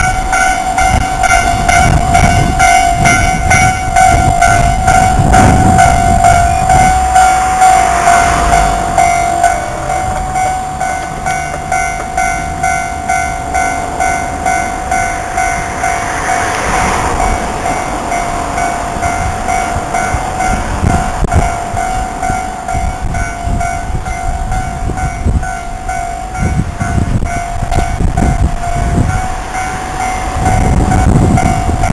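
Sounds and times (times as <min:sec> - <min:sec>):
level crossing warning bell ringing: 0:00.0 - 0:31.9
train rumbling: 0:00.0 - 0:31.9.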